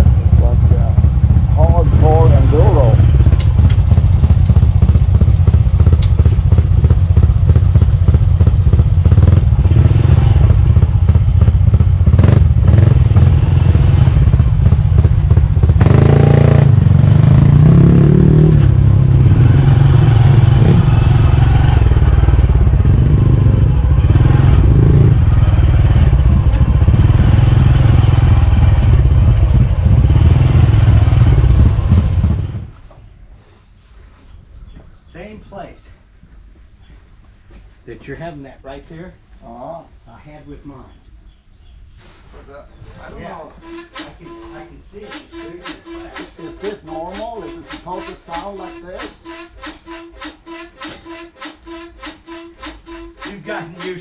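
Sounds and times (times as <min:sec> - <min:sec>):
motorcycle engine running: 0:00.0 - 0:32.8, 0:45.0 - 0:54.0.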